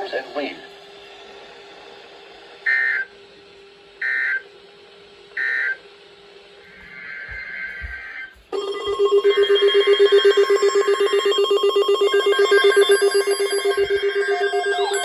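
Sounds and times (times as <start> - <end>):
pulsing electronic alert buzz: 8.6 - 15.0.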